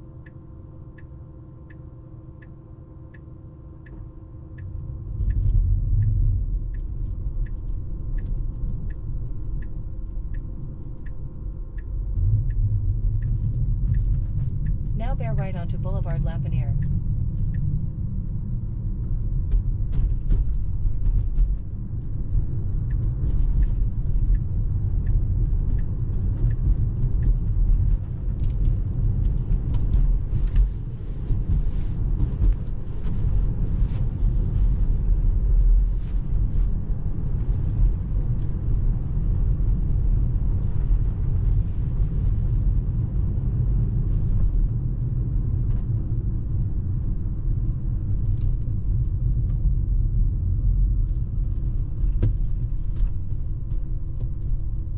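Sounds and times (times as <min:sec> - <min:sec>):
turn signal ticking: 0:00.2 - 0:18.6, 0:19.3 - 0:33.2.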